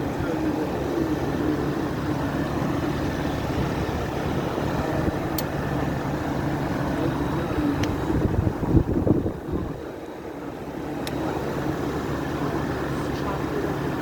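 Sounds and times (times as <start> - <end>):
heat pump unit humming: 0.0 - 14.0.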